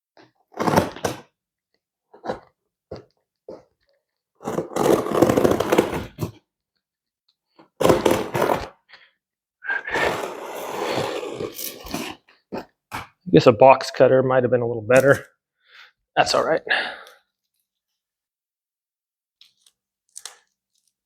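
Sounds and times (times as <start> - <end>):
packing tape tearing on cardboard box: 0.5 - 1.3, 4.4 - 6.4, 7.8 - 8.7, 9.9 - 12.2.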